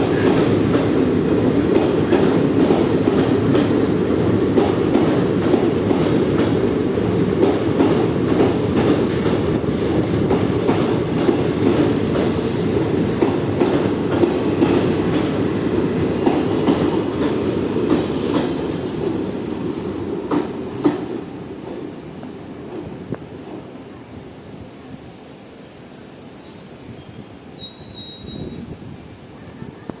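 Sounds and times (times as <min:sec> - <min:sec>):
train wheels rumbling: 0:00.0 - 0:30.0
high steady squeal: 0:21.4 - 0:28.7.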